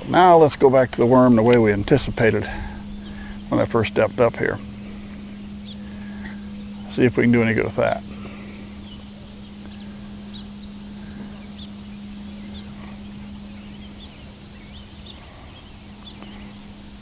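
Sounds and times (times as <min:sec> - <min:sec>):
high bird chirps: 0:00.0 - 0:17.0
steady low hum: 0:00.0 - 0:17.0.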